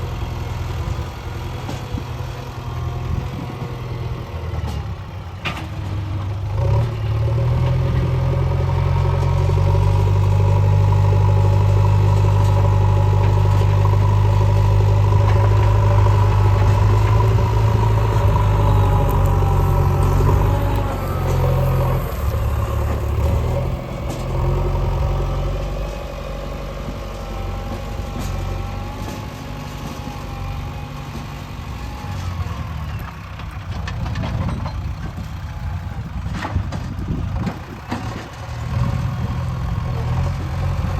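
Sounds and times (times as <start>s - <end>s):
diesel engine working under load: 0.0s - 40.9s.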